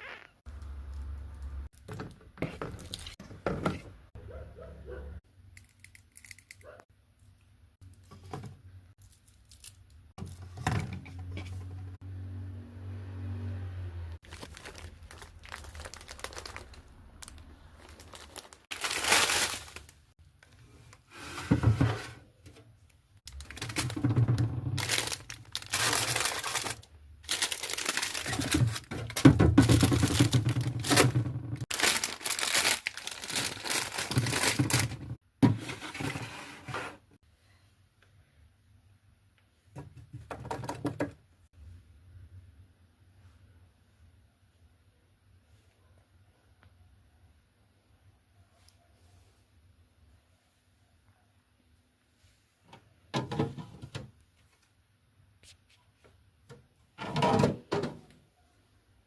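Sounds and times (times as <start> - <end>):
plastic wrappers crinkling: 9.0 - 10.4, 14.2 - 20.6, 23.3 - 35.2.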